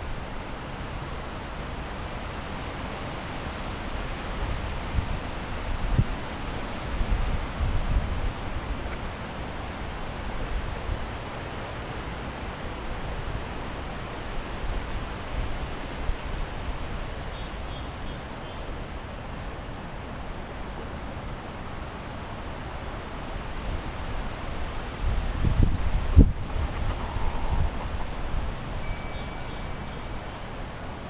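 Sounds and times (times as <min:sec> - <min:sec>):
wind buffeting microphone: 0:25.0 - 0:28.8
faint high chirps: 0:28.4 - 0:30.5.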